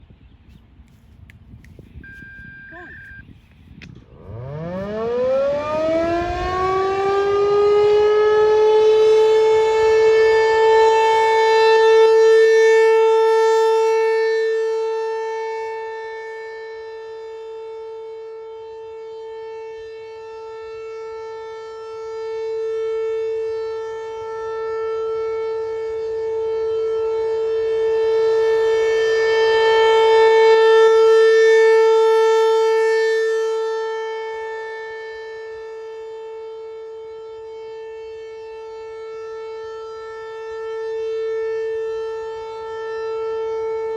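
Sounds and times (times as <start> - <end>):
rotating warning siren: 1.7 - 43.9.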